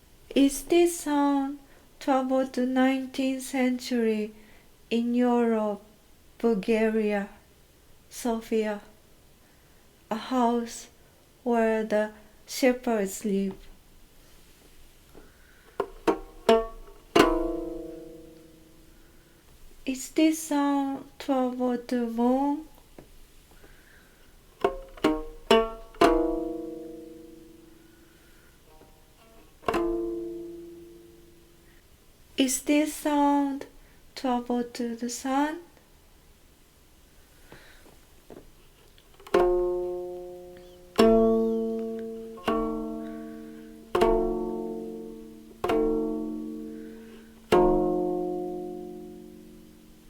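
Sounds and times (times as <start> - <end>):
plucked string instrument notes: 15.8 - 19.1, 24.6 - 31.8, 39.2 - 50.0.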